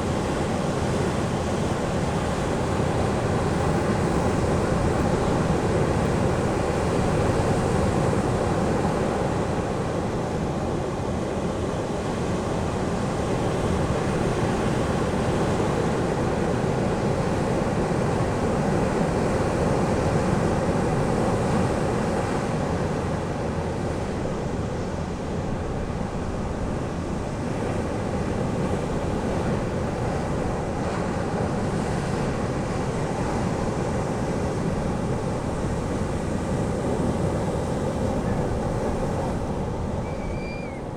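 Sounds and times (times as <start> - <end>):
ocean waves breaking on sand: 12.8 - 40.0.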